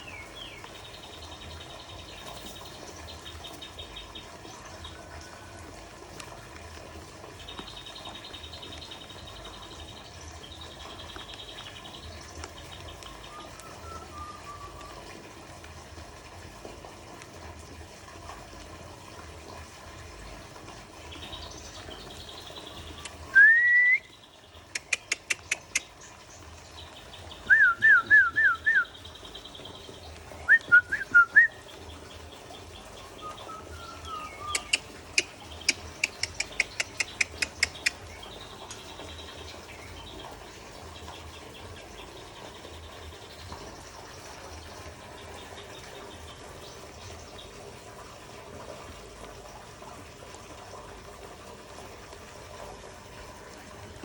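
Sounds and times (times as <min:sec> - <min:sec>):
songbird rising whistle: 0:13.3 - 0:15.0, 0:23.3 - 0:24.1, 0:27.5 - 0:28.9, 0:30.5 - 0:31.6
bird sharp clicking notes: 0:24.7 - 0:26.0, 0:34.2 - 0:38.1.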